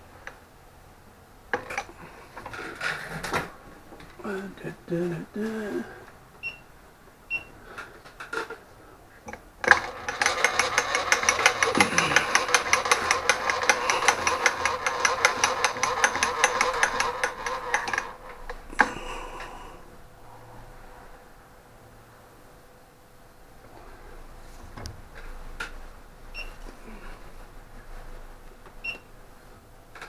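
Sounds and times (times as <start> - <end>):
drill bit chattering in metal: 9.7 - 18.2.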